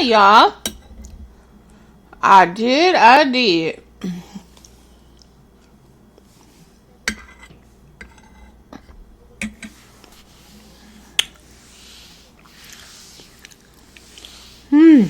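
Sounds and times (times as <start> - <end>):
dishes and cutlery clicking: 0.6 - 1.2, 7.1 - 9.8.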